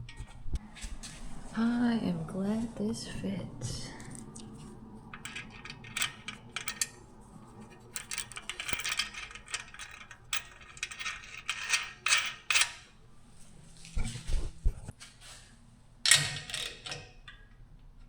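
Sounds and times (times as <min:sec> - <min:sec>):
metal hardware clinks and clicks: 0:05.1 - 0:07.0, 0:07.6 - 0:12.9.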